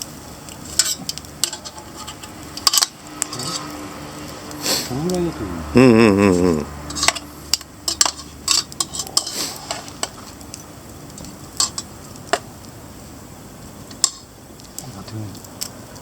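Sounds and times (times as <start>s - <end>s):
metal utensils clinking on cookware: 0.7s - 3.8s, 6.9s - 10.2s.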